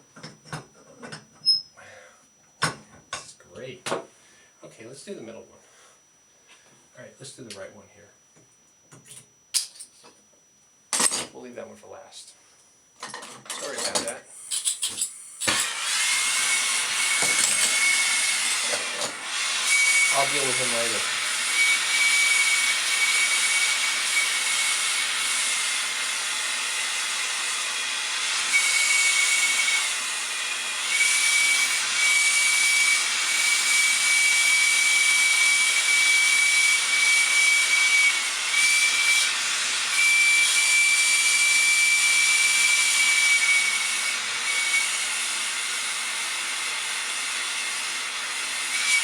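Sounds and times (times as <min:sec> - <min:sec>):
gas torch flame hissing: 0:14.3 - 0:35.8.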